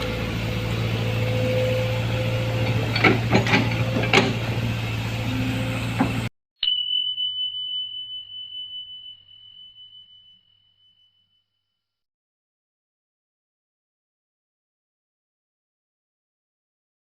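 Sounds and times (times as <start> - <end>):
diesel engine running: 0.0 - 6.3
high chime ringing: 6.6 - 11.8.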